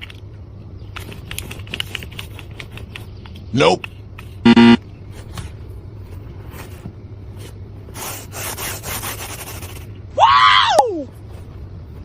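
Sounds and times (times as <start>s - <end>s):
short loud pitched sound: 4.5s - 4.8s.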